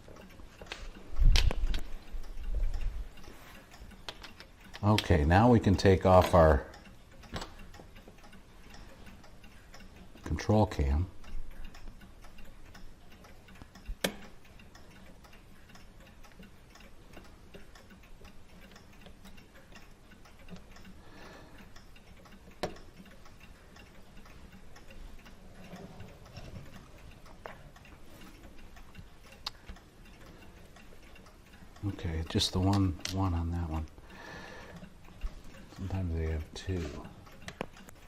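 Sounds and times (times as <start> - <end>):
clock ticking: 0.0 - 38.0
metallic clicks of small tools: 0.6 - 5.1, 31.8 - 33.9.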